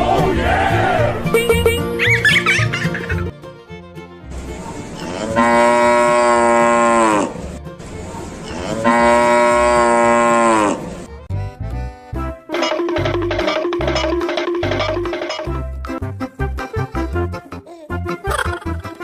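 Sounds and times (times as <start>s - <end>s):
light background music: 0.0s - 19.0s
cow mooing: 5.0s - 7.4s, 8.5s - 10.8s.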